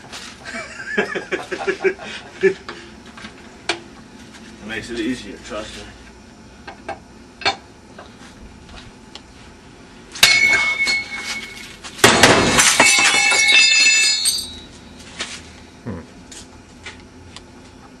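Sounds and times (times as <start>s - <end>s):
hard objects crashing and clattering: 10.2s - 14.7s.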